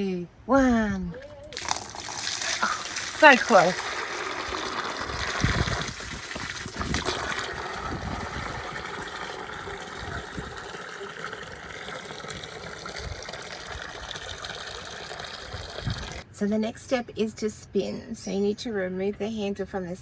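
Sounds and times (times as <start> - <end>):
water trickling from drain outlet: 1.6 - 16.2.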